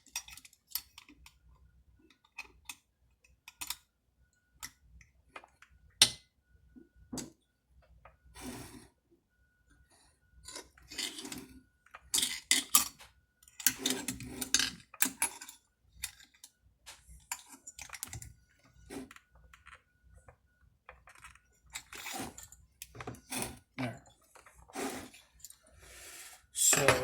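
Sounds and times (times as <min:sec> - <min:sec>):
metal parts clicking and clattering: 0:12.1 - 0:16.5.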